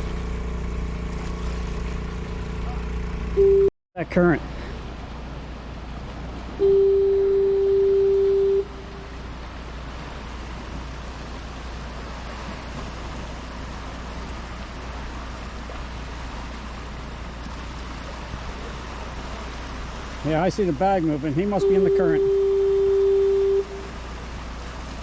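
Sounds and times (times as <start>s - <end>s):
wind and water rushing: 0.0s - 3.4s, 4.0s - 25.0s
horn-like steady tone: 3.3s - 3.7s, 6.6s - 9.3s, 21.4s - 24.1s.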